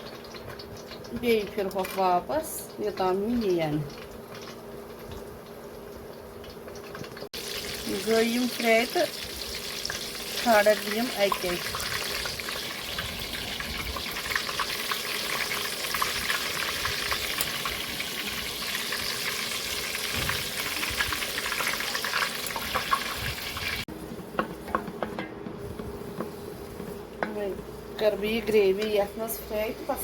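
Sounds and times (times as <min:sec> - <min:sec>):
food sizzling in hot oil: 0:00.0 - 0:24.0.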